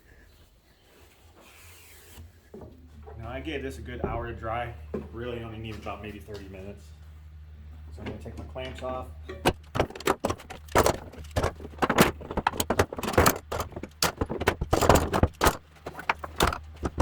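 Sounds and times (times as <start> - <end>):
metal clamps clicking and rattling: 8.6 - 17.0.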